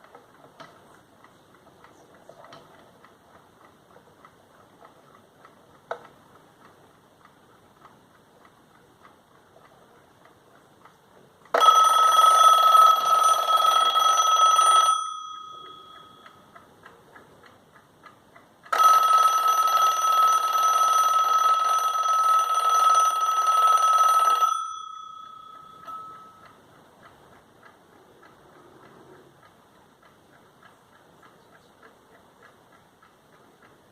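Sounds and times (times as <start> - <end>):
alarm clock ticking: 0.0 - 33.9
alarm bell ringing: 11.6 - 16.4, 18.7 - 26.6.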